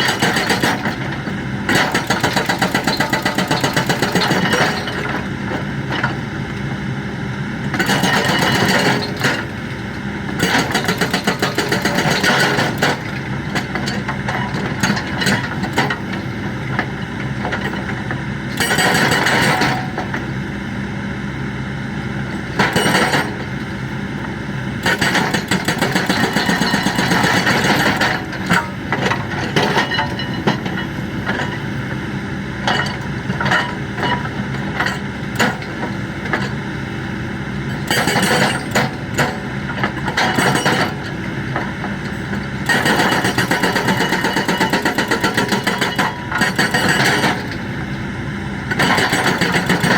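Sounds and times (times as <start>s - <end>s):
hydraulic breaker hammering: 0.0s - 5.4s, 10.3s - 16.5s, 22.4s - 23.6s, 24.8s - 36.7s, 37.8s - 48.0s, 48.7s - 49.9s
diesel engine running: 0.0s - 49.9s.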